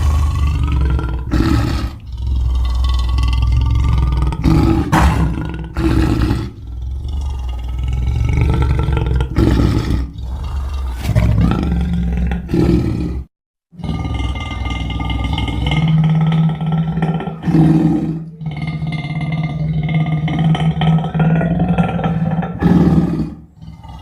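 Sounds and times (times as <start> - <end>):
monster roars and growls: 0.0 - 18.8.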